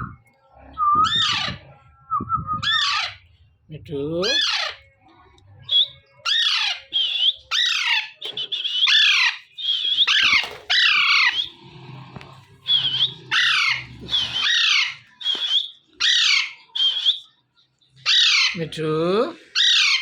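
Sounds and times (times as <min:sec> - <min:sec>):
parakeet squawking: 0:01.0 - 0:01.6, 0:02.6 - 0:03.2, 0:04.2 - 0:04.8, 0:07.5 - 0:11.6, 0:12.5 - 0:17.1, 0:18.0 - 0:18.6, 0:19.5 - 0:20.0
whistled bird notes: 0:05.6 - 0:11.8, 0:12.5 - 0:18.5.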